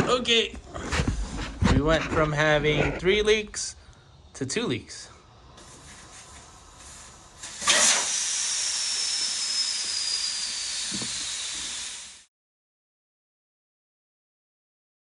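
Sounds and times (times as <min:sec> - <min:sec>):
compressed air hissing: 0:05.1 - 0:12.3.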